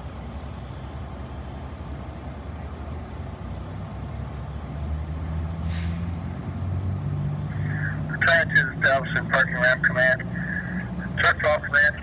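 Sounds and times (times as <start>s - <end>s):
vehicle engine humming: 0.0s - 12.0s
brief hiss: 5.6s - 6.1s.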